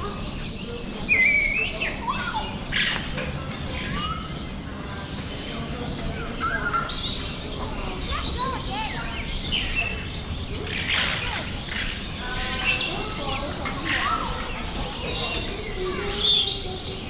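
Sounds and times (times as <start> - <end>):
parrots calling: 9.2 - 14.6.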